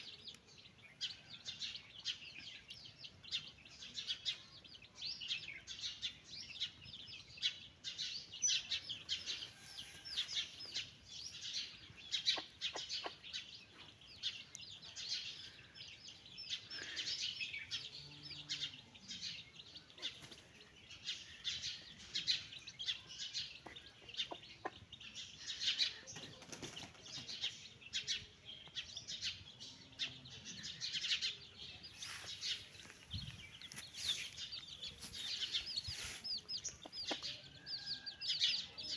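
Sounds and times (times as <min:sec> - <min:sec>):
chicks peeping: 0:00.0 - 0:38.9
hen clucking: 0:32.4 - 0:37.4.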